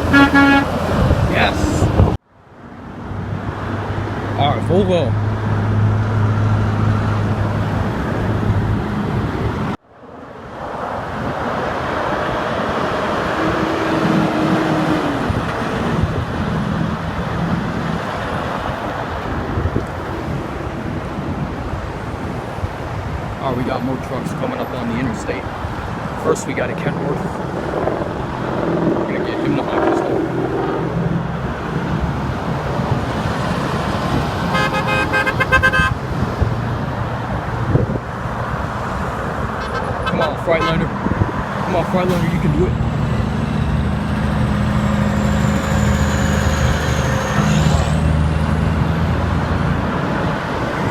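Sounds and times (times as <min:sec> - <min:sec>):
vehicle horn: 0:00.0 - 0:00.9, 0:34.5 - 0:36.0, 0:39.6 - 0:40.9
highway traffic passing: 0:00.0 - 0:50.9.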